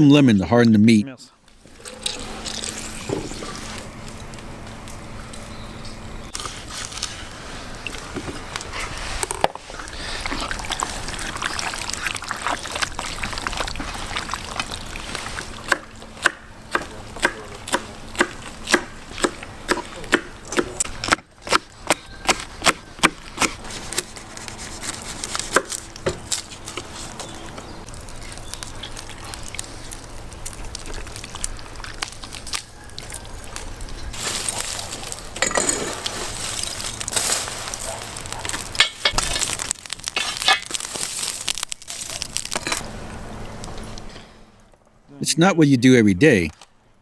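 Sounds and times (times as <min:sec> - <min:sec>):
food preparation handling noise: 0:06.3 - 0:44.2
knife chopping on wooden board: 0:15.7 - 0:23.6.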